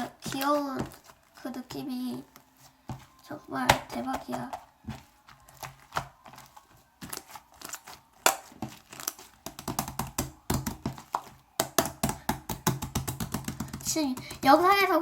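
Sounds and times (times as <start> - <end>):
slime crackling and popping: 5.5 - 13.8.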